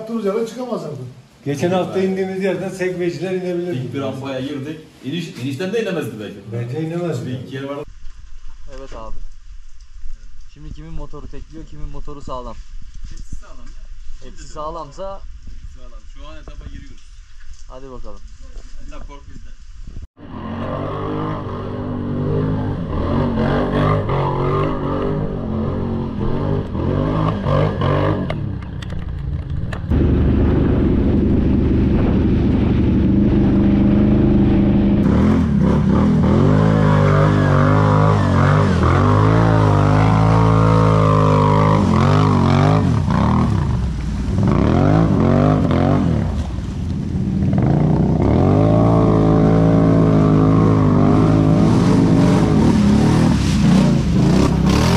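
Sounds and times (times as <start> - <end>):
atv engine revving: 20.2 - 54.9.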